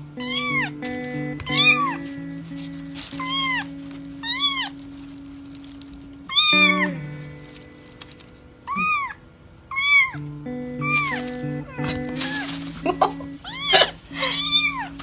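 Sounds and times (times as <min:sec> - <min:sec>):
background music with held notes: 0:00.0 - 0:09.1, 0:09.8 - 0:15.0
kitten meowing: 0:00.2 - 0:00.8, 0:01.4 - 0:02.0, 0:03.2 - 0:04.7, 0:06.3 - 0:07.0, 0:08.6 - 0:10.2, 0:10.8 - 0:12.6, 0:13.4 - 0:15.0.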